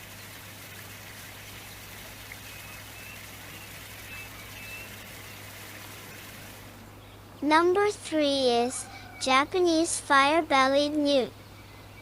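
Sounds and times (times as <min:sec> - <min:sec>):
running water: 0:00.0 - 0:06.9.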